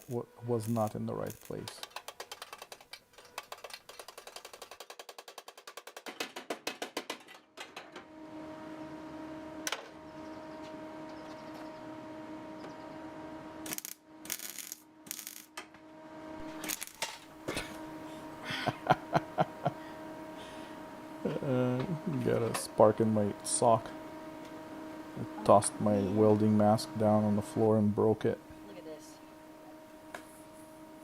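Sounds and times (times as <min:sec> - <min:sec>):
steady hum: 0:00.0 - 0:04.4, 0:07.9 - 0:31.0
welding crackle: 0:00.0 - 0:05.4, 0:13.6 - 0:15.6, 0:16.4 - 0:17.9.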